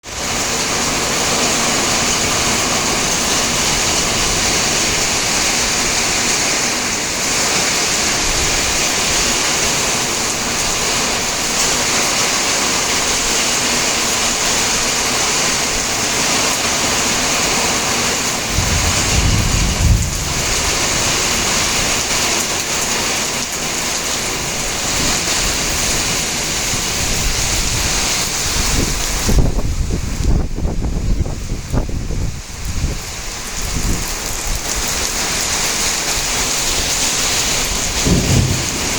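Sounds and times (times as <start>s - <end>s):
steady rain falling: 0.0s - 38.9s
low rumble: 18.5s - 20.7s.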